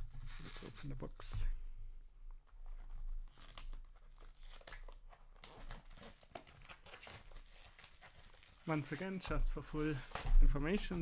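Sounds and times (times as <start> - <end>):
wrapping tearing and crinkling: 2.8 - 11.0.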